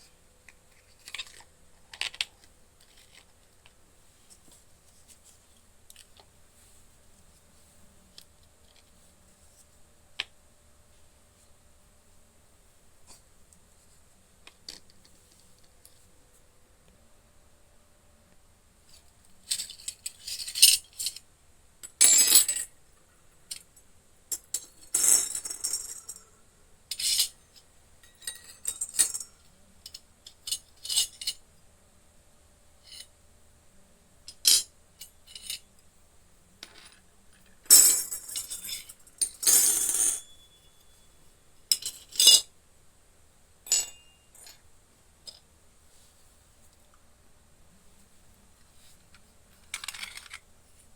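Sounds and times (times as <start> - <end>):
toy cooking pieces clinking: 49.7 - 50.4.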